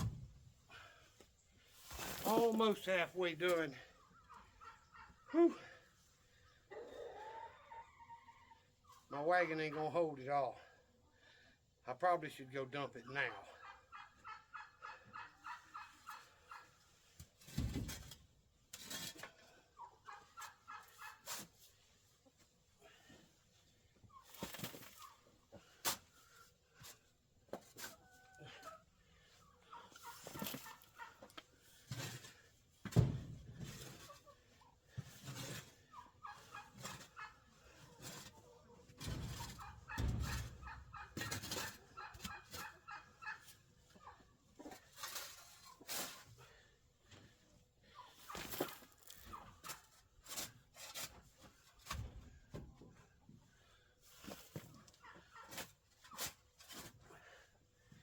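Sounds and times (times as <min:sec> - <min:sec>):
sharp knocks and scrapes: 0:30.0 - 0:34.3, 0:35.0 - 0:43.0, 0:48.3 - 0:52.4
poultry calling: 0:39.1 - 0:44.7.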